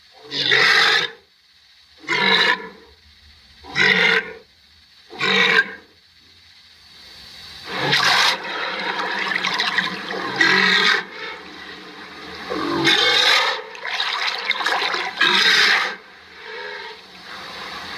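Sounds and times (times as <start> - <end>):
rhinoceros calling: 7.6 - 17.9.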